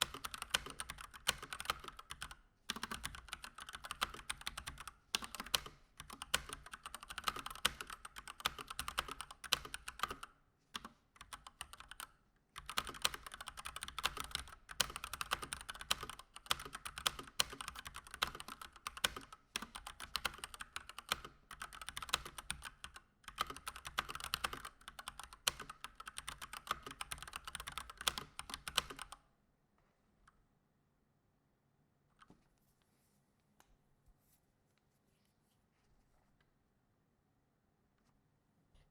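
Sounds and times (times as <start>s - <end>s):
fast typing on mechanical keyboard: 0.0s - 29.2s.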